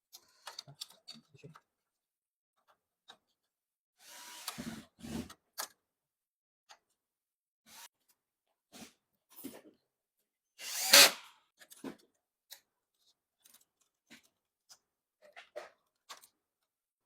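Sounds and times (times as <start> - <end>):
small clicks and knocks of parts: 0.0 - 2.0, 2.6 - 3.5, 11.5 - 16.7
electric screwdriver whirring: 10.6 - 11.2.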